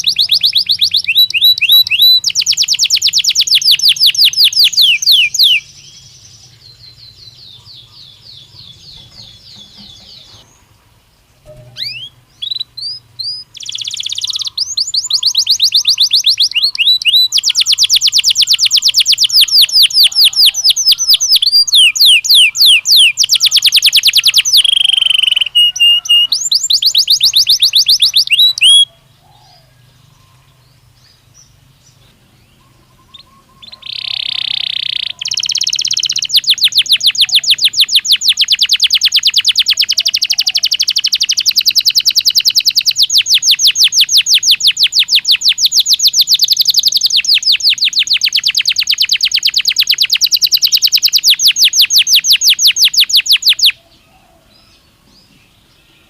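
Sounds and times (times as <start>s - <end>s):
canary singing: 0.0s - 56.0s.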